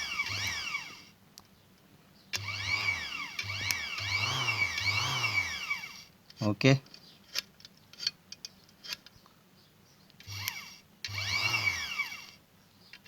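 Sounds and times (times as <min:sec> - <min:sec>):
sewing machine motor whine: 0:00.0 - 0:01.1, 0:02.4 - 0:06.1, 0:10.2 - 0:12.4
low electrical hum: 0:00.0 - 0:13.0.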